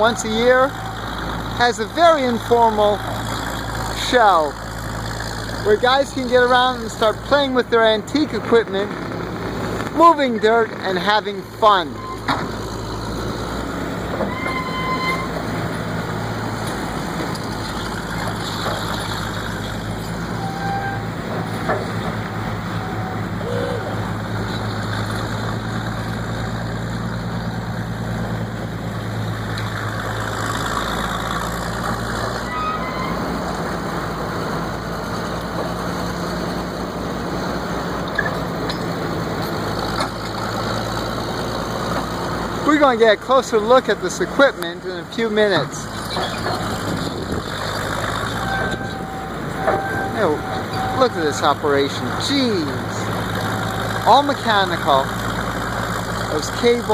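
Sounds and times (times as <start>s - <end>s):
heavy machinery engines droning: 0.0s - 56.9s
brief higher tones: 14.3s - 15.4s.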